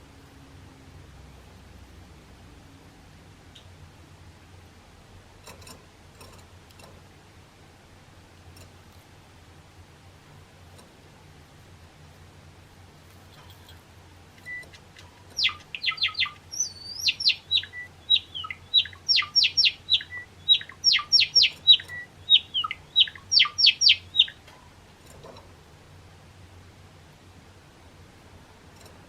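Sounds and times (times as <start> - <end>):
sparrow singing: 14.4 - 24.4.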